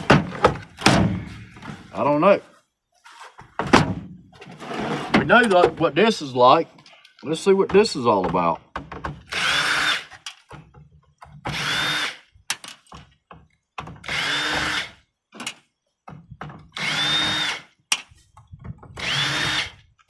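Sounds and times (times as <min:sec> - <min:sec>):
power drill spinning: 0:09.3 - 0:10.2, 0:11.5 - 0:12.3, 0:14.0 - 0:15.0, 0:16.8 - 0:17.7, 0:19.0 - 0:19.9.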